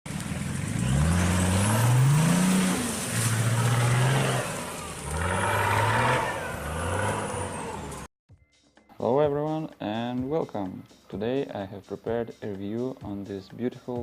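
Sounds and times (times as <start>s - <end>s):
car engine accelerating: 0.1s - 8.1s.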